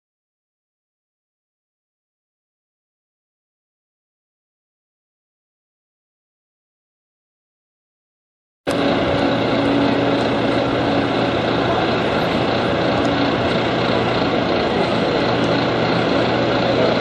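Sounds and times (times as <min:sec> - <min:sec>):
bus diesel engine whining drone: 0:08.7 - 0:17.0.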